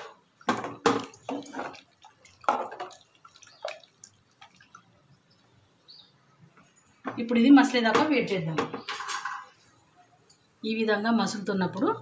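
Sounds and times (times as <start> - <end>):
soup splashing in a pot: 0.4 - 5.0.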